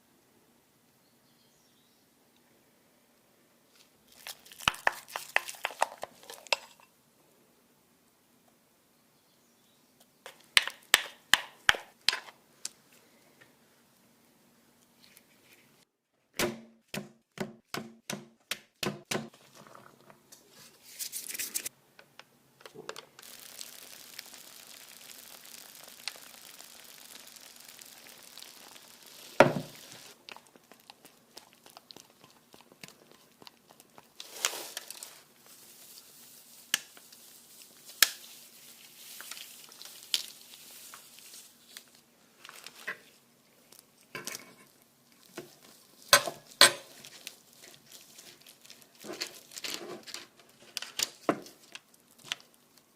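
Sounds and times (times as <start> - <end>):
crinkling hiss with snaps: 3.7 - 7.0, 10.0 - 13.6, 21.6 - 52.9.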